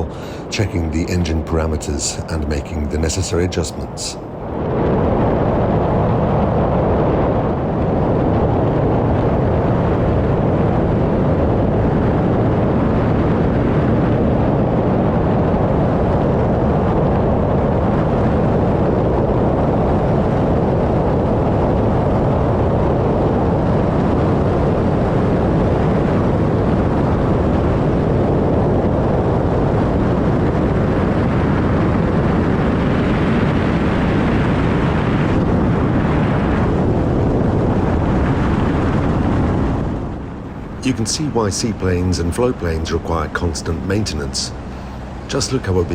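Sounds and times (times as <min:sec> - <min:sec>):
plane piston engine and propeller: 0:40.5 - 0:45.9.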